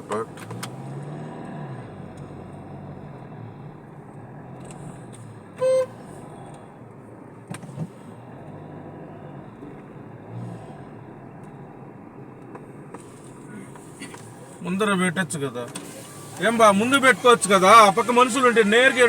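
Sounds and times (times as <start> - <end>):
car moving slowly hum: 0.0 - 19.0
car horn toot: 5.5 - 6.0.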